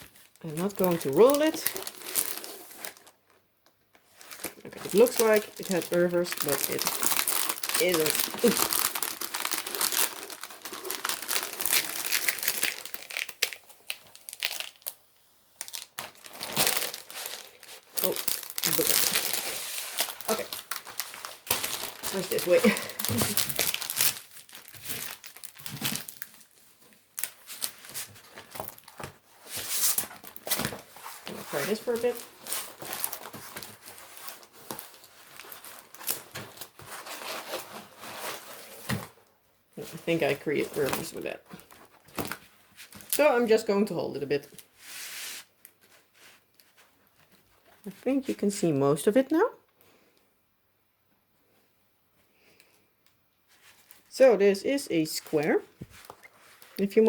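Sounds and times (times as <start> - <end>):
plastic wrapping crinkling: 0.0 - 15.0, 15.6 - 39.2, 39.8 - 43.7.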